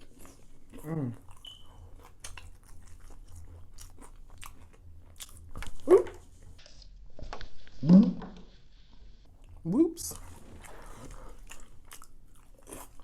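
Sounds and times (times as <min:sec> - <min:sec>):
chewing crispy fried chicken: 0:00.0 - 0:06.6, 0:09.4 - 0:13.0.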